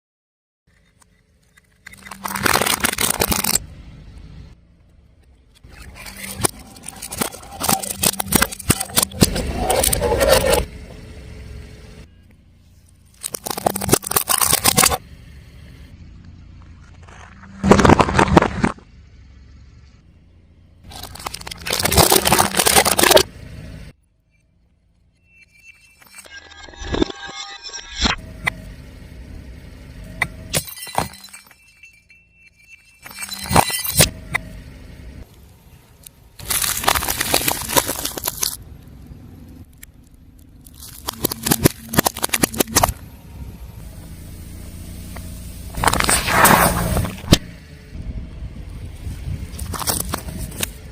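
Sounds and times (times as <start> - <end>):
car rumble: 0.7 - 25.5, 28.0 - 50.9
tyre crushing crunchy objects: 1.9 - 3.6, 13.1 - 15.0, 16.8 - 18.8, 20.9 - 23.3, 36.4 - 38.6, 40.4 - 43.0, 45.7 - 47.5, 49.5 - 50.9.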